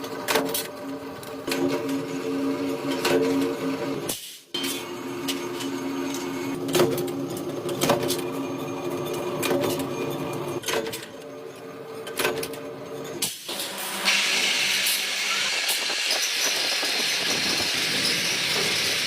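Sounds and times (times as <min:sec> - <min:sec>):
factory machinery humming: 0:13.2 - 0:19.0.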